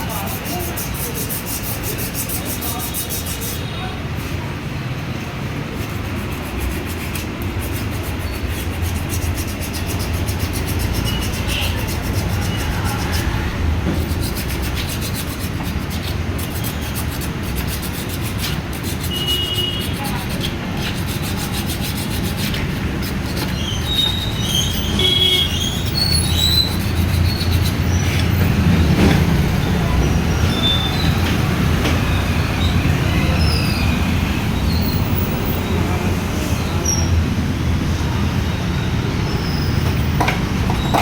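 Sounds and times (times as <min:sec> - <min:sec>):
motorcycle brake grinding: 0:06.0 - 0:29.4.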